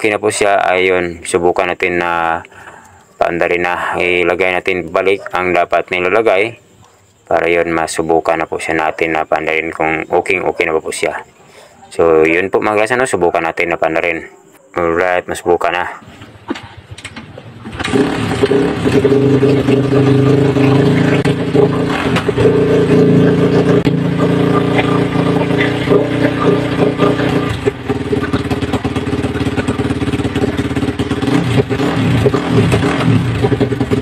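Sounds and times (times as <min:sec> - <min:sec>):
motorcycle engine starting and running: 0:16.0 - 0:34.0.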